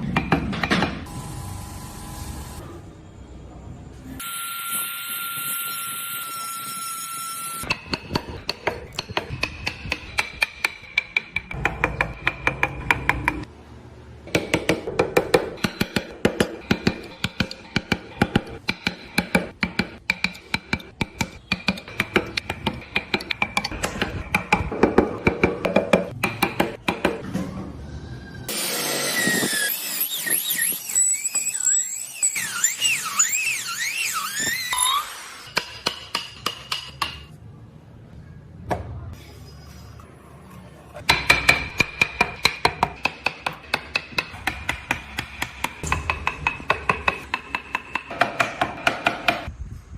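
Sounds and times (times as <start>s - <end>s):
mallet tapping on a chisel: 7.7s - 13.5s, 14.3s - 27.2s, 35.6s - 37.3s, 41.1s - 49.5s.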